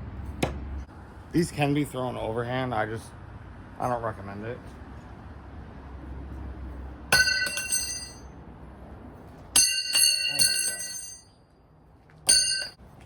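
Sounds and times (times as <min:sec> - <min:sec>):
throwing knives striking metal: 0:07.1 - 0:08.2.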